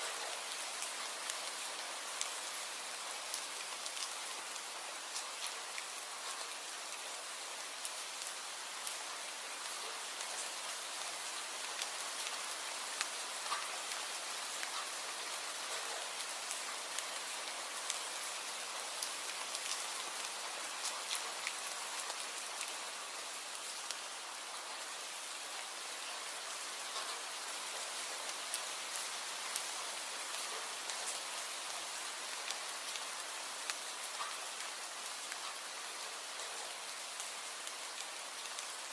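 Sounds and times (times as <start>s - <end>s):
raindrops ticking on a surface: 0.0s - 38.9s
steady rain hiss: 0.0s - 38.9s.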